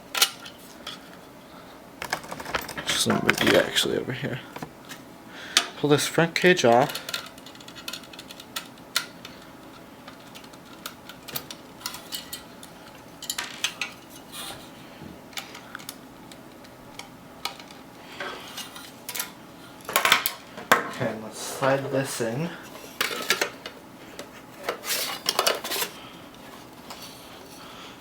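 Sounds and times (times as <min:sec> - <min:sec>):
metal computer case parts clinking: 0:02.0 - 0:03.8.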